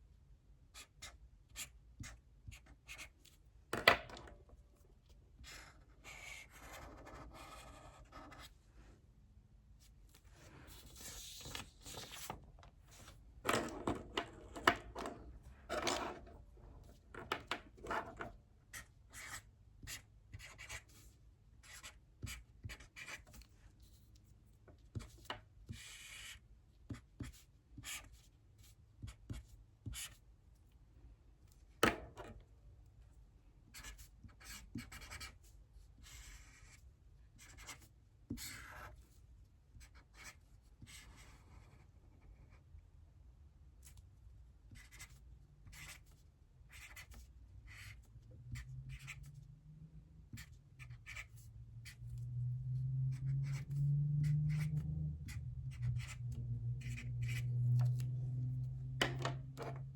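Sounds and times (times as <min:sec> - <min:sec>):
pen scratching on paper: 0:05.4 - 0:08.5, 0:17.8 - 0:21.0, 0:21.6 - 0:23.4, 0:24.9 - 0:28.3, 0:29.0 - 0:30.2, 0:33.7 - 0:35.4, 0:37.4 - 0:39.0, 0:39.8 - 0:41.8, 0:44.7 - 0:49.3, 0:50.3 - 0:52.0, 0:53.2 - 0:56.2, 0:56.8 - 0:58.0.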